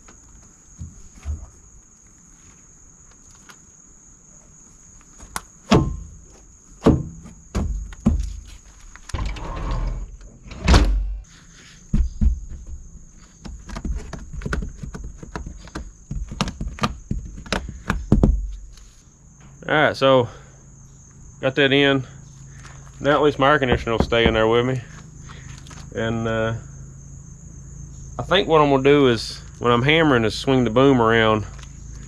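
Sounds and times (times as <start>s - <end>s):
knocks and thunks: 0.8s - 1.6s, 5.2s - 8.5s, 9.2s - 11.2s, 11.9s - 18.7s, 23.6s - 25.0s
heavy thump: 6.8s - 8.4s, 23.6s - 24.7s
scraping slide: 9.1s - 10.6s.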